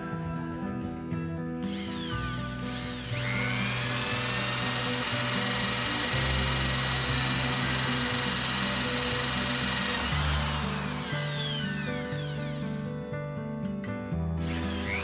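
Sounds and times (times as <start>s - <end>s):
background music: 0.0s - 15.0s
electric drill whining: 1.6s - 13.0s, 14.4s - 15.0s.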